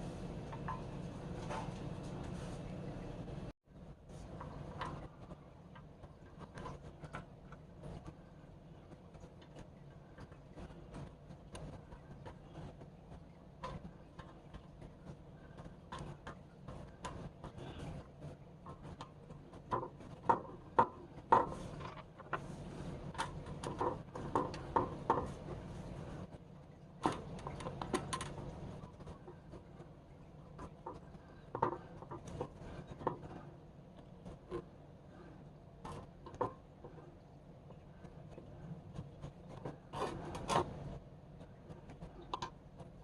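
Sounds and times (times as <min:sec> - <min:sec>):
low steady hum: 0:00.0 - 0:43.0.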